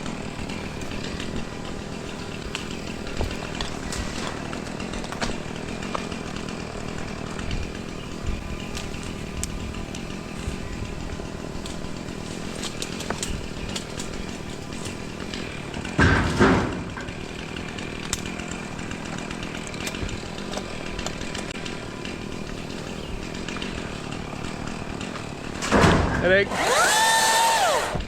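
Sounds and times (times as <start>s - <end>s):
chainsaw cutting wood: 0.0s - 28.0s.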